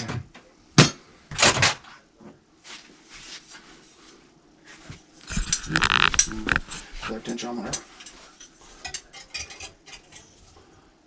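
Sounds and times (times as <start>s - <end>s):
tools clattering: 7.7s - 10.4s.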